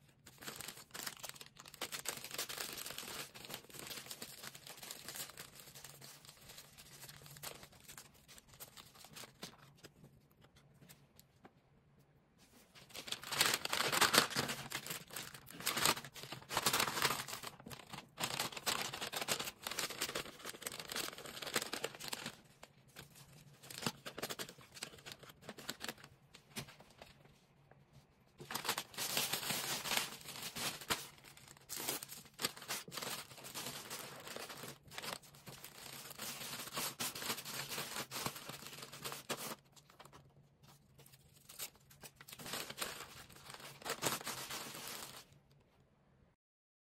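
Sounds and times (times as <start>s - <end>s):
packing material tearing: 0.3s - 9.5s, 12.9s - 22.4s, 28.4s - 40.0s, 41.2s - 45.4s
plastic crinkling and rustling: 12.5s - 27.3s, 28.4s - 45.5s.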